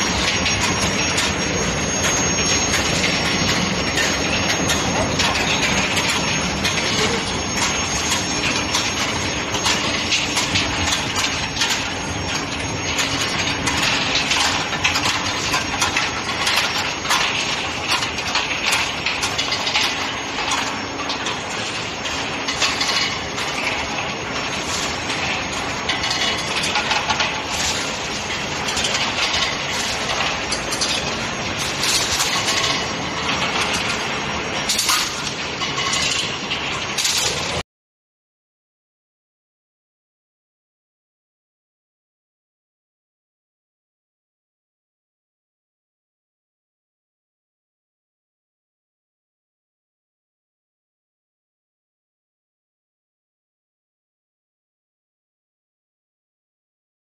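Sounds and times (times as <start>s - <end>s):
machinery clatter: 0.0s - 37.6s.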